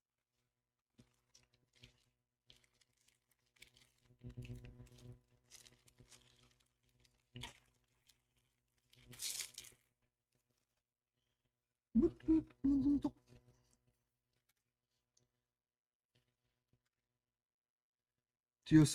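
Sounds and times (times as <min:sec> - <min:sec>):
foil wrapper tearing and crinkling: 0:01.0 - 0:10.0.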